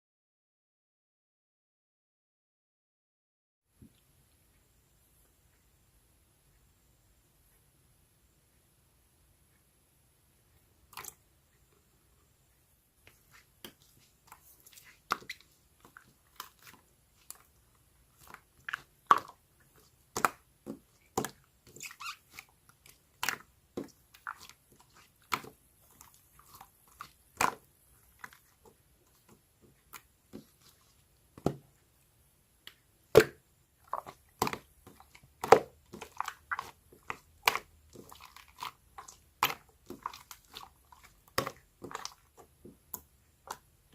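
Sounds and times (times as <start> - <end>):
slime clicking and popping: 33.1 - 42.2.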